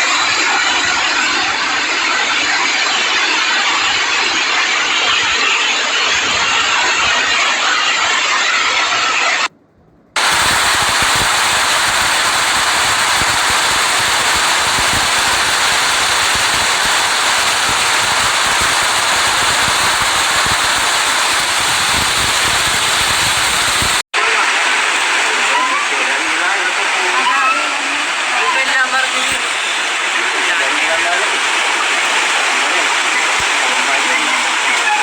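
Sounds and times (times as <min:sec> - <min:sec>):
rushing floodwater: 0:10.2 - 0:21.6, 0:22.3 - 0:35.0.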